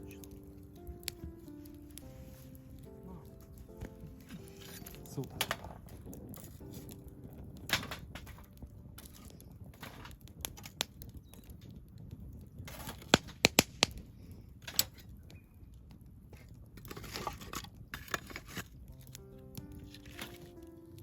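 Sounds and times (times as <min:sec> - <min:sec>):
rustling and crumpling: 0:00.0 - 0:13.5, 0:16.2 - 0:21.0
sharp snaps: 0:13.1 - 0:14.1.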